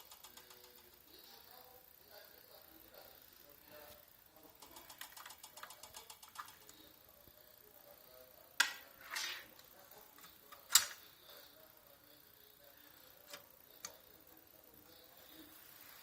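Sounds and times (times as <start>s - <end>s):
sharp clicks: 0.0s - 1.0s, 4.6s - 6.8s
rapid light ticks: 0.0s - 1.2s, 4.4s - 6.9s.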